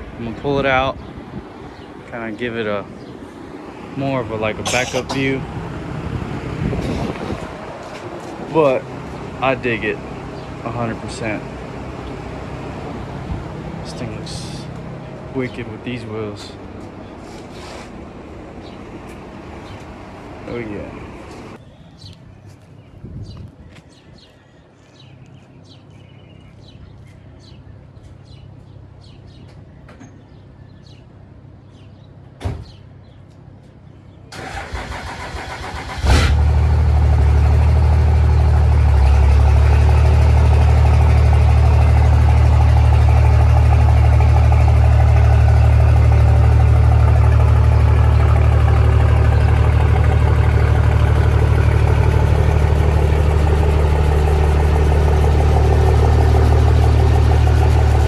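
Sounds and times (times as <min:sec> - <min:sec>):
loud engine idle: 0:02.1 - 0:21.6, 0:34.4 - 0:58.0
engine bang: 0:03.9 - 0:15.7, 0:34.4 - 0:58.0
engine cranking: 0:04.3 - 0:14.6, 0:34.4 - 0:58.0.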